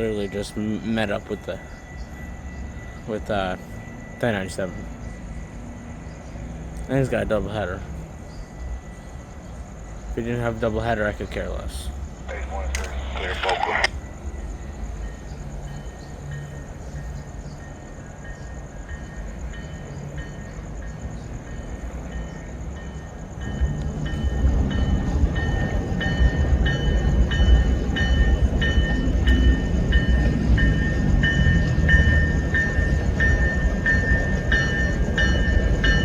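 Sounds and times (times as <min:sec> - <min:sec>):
diesel locomotive engine rumble: 0:00.0 - 0:36.0.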